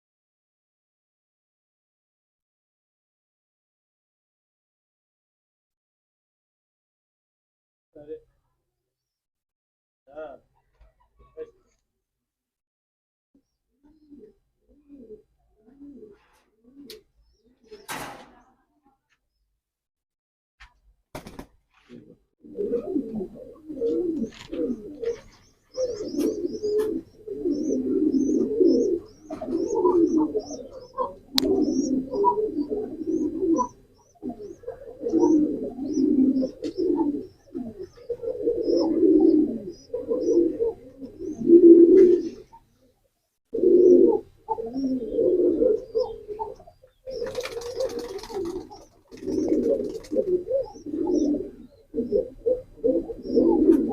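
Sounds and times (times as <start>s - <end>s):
pigeons cooing: 13.4s - 18.1s, 22.4s - 42.9s, 43.5s - 53.9s.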